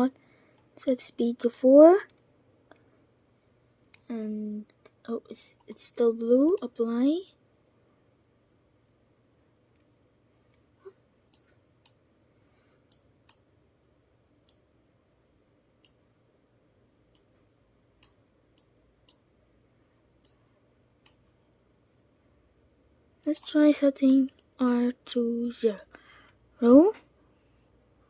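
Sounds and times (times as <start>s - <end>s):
computer mouse clicking: 5.6s - 6.7s, 12.9s - 13.5s, 14.4s - 14.6s, 15.8s - 16.0s, 17.1s - 17.3s, 18.0s - 19.3s, 20.2s - 20.4s, 23.2s - 24.5s.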